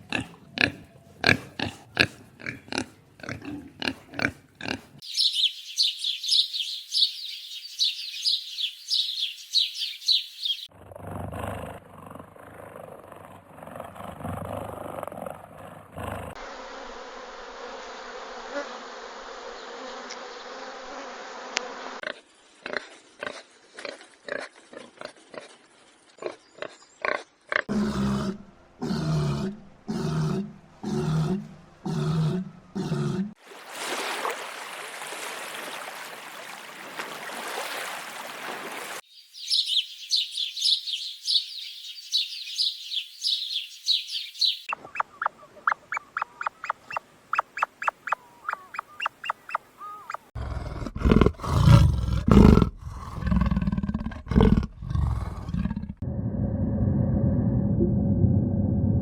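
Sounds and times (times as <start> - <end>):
deep pulsing animal grunts: 10.7 - 16.4, 26.2 - 33.4, 50.4 - 59.0
rapid high-pitched animal chattering: 44.6 - 50.3.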